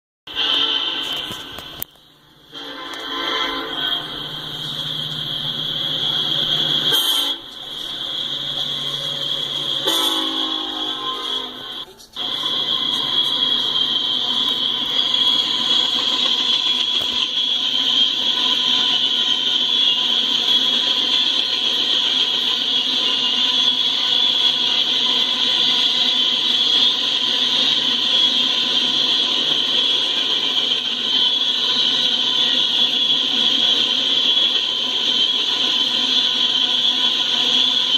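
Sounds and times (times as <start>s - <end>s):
locomotive air horn blasts: 0.3s - 1.9s, 2.5s - 37.9s
train wheels rushing on rail: 0.3s - 37.9s.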